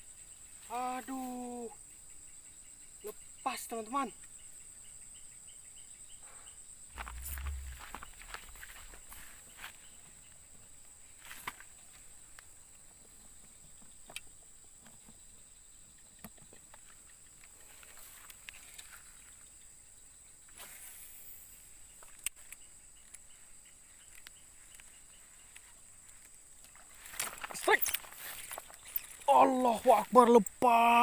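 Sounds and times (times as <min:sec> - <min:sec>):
high-pitched insect trill: 0:00.0 - 0:31.0
small clicks and rustles: 0:15.9 - 0:19.3, 0:22.0 - 0:29.3.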